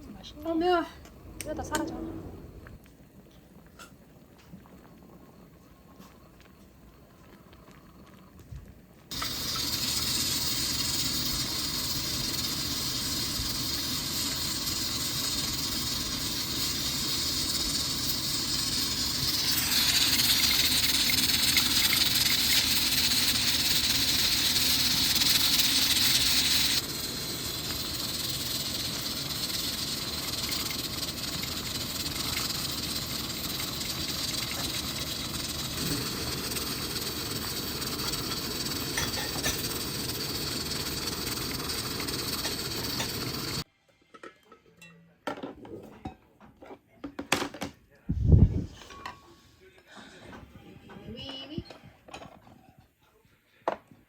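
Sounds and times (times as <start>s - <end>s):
pot boiling with steamy hiss: 2.6s - 43.7s.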